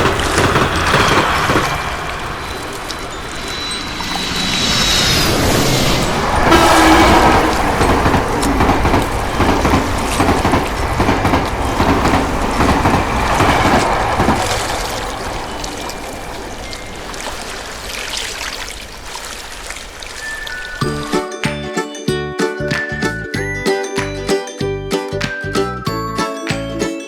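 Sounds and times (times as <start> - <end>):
train rumbling and rattling past: 0.0 - 17.7.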